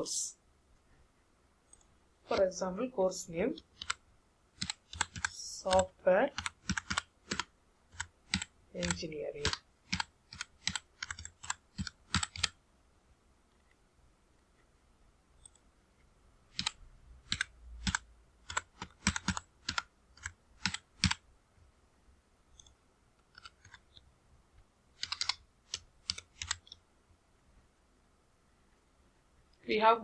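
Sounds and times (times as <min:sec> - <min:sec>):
keyboard typing: 0:03.3 - 0:04.0, 0:04.6 - 0:12.6, 0:16.5 - 0:21.2, 0:22.5 - 0:24.1, 0:24.9 - 0:26.8.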